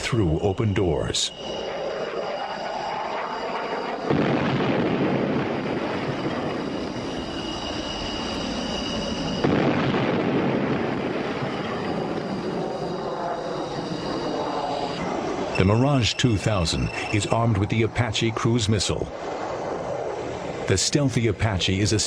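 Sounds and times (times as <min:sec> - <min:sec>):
jet engine roar with whine: 0:00.0 - 0:22.0.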